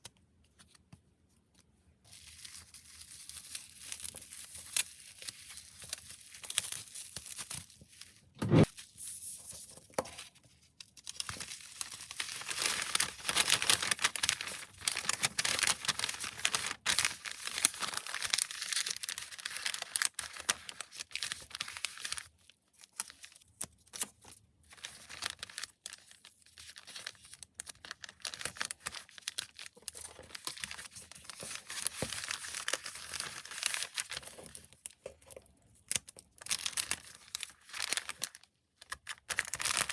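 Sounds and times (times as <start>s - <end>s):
sharp knock: 8.4s - 8.7s
plastic packaging crinkling: 10.2s - 39.9s.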